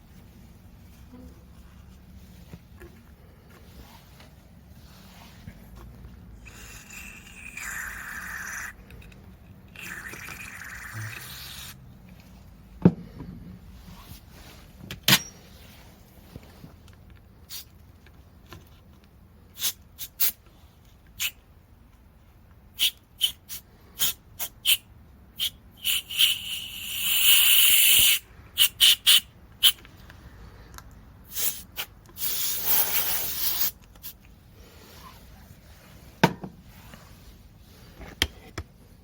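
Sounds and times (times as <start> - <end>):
spray nozzle hissing: 25.4 - 29.8, 31.3 - 33.8.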